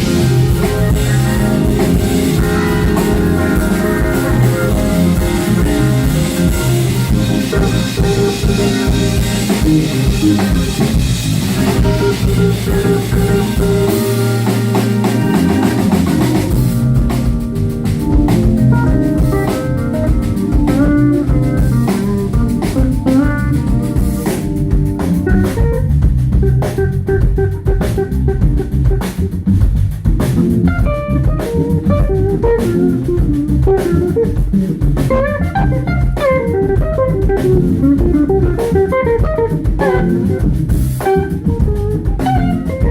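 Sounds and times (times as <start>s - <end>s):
lead guitar sliding notes: 0.0s - 25.8s, 35.1s - 42.9s
bass guitar: 0.0s - 42.9s
drum kit: 0.0s - 42.9s.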